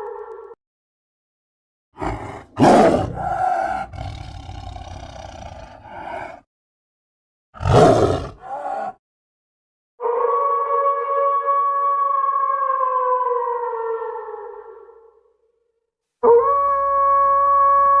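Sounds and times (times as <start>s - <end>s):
creature roar: 2.0s - 6.4s, 7.6s - 9.0s.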